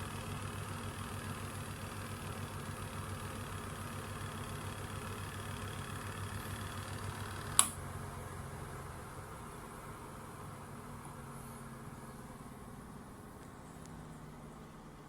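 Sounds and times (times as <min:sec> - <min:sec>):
appliance motor humming: 0:00.0 - 0:07.7
sharp click: 0:07.6 - 0:07.8.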